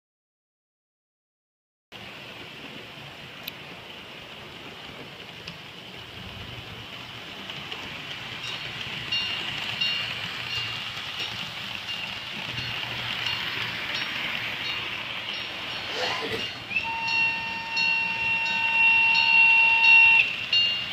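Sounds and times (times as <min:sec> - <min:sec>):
model train running on track: 0:02.0 - 0:20.9.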